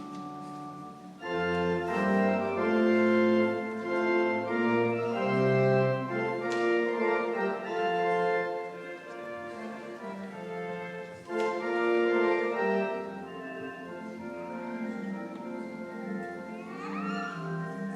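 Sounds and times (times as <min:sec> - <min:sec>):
church organ playing chords: 0:00.0 - 0:17.9.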